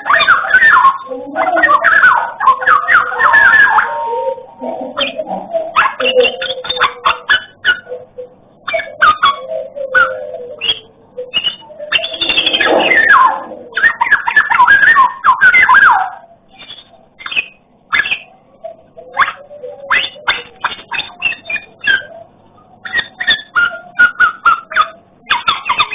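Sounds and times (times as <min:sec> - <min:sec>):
bird singing whistled phrases: 0:08.7 - 0:22.1, 0:22.8 - 0:25.9.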